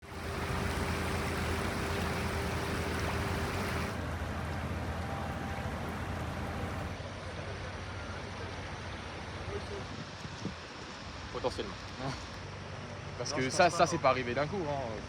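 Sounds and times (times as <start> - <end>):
floodwater rushing: 0.0 - 7.0
faint steady hum: 0.0 - 9.5.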